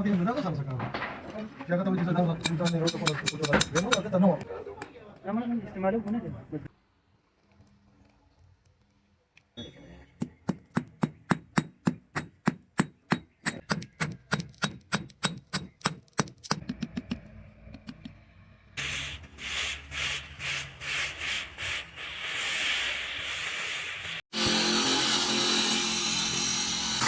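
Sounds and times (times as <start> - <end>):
metal-working strikes: 2.0 - 4.1
power tool running: 24.3 - 27.0.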